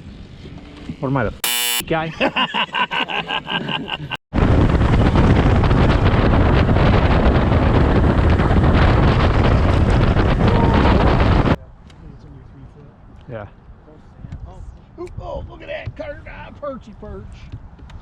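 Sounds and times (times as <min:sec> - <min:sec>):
wind buffeting microphone: 0:04.4 - 0:11.6.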